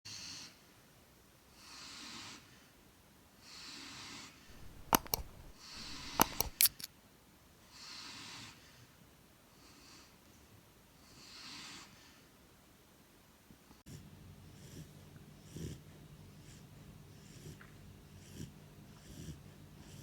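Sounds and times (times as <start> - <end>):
sharp clicks: 4.5 - 6.9
puppy snoring: 18.2 - 20.0.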